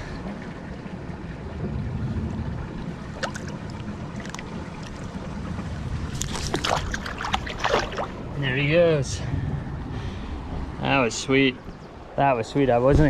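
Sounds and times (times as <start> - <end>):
creek water running: 0.0 - 9.2
wind rumble on microphone: 0.0 - 13.0
light splashes: 2.8 - 8.4.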